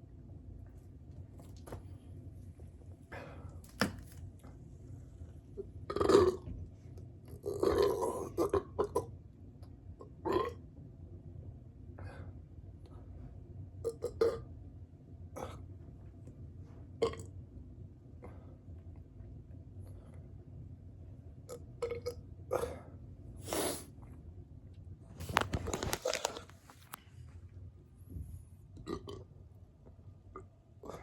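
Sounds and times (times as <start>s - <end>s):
person burping: 28.8s - 29.2s.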